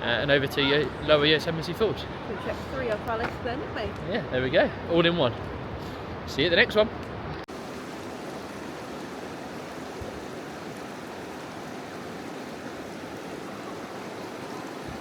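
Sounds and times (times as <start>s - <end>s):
river water rushing: 7.5s - 15.0s.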